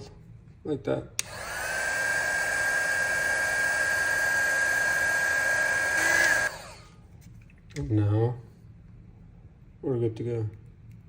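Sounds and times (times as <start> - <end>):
heat gun fan whirring: 1.2 - 7.0.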